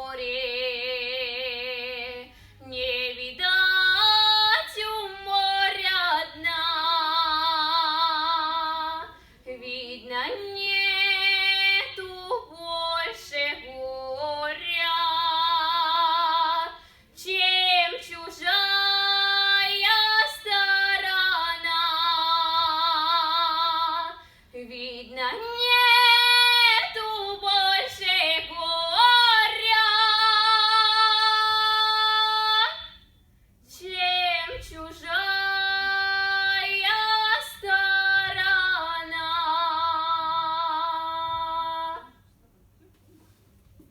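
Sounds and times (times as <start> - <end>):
girl singing unaccompanied: 33.7 - 42.2.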